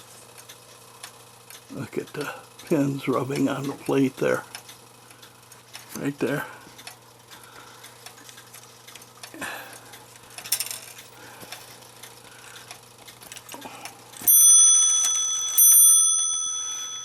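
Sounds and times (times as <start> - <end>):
clock mechanism clicks and rattles: 0.0 - 17.0
clock hammer striking bell: 14.3 - 17.0.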